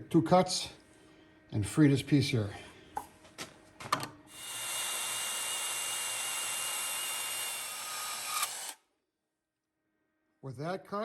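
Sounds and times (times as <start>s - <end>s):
power saw cutting metal: 4.3s - 8.8s.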